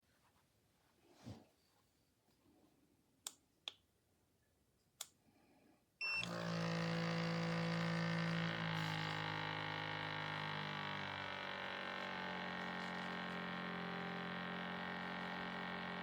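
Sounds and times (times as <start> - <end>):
espresso maker pump buzzing: 6.0 - 16.0.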